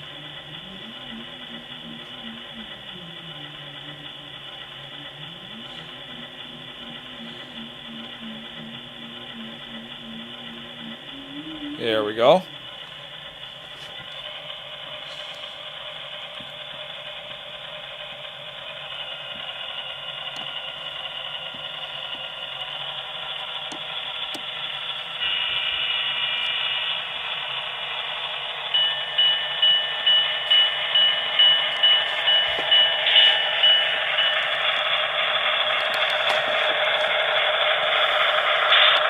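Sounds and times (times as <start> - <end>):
model diesel engine sound: 0.0 - 39.0
bell ringing: 28.7 - 35.2.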